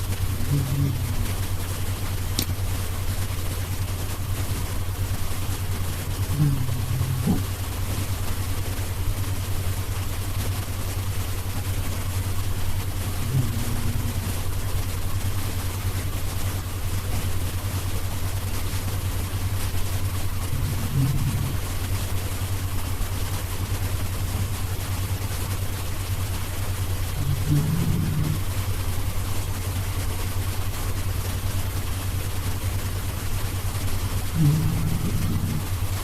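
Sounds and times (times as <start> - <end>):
low snoring: 0.0 - 2.5, 6.0 - 8.0, 12.8 - 15.1, 19.7 - 22.4, 27.0 - 29.0, 34.2 - 36.0
steady low hum: 0.0 - 36.0.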